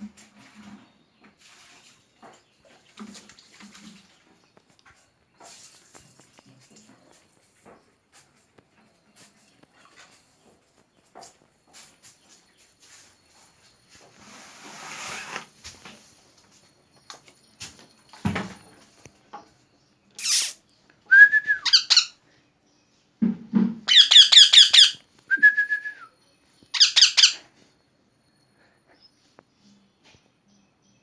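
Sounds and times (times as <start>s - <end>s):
parrot screeching and chirping: 20.2s - 20.6s, 21.6s - 22.2s, 23.9s - 25.0s, 26.7s - 27.4s
knock: 23.2s - 23.9s.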